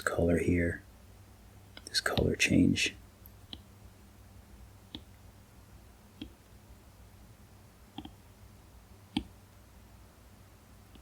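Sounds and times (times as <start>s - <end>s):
faint low hum: 0.0s - 11.0s
stylus tapping on tablet screen: 4.9s - 5.1s, 7.9s - 8.2s.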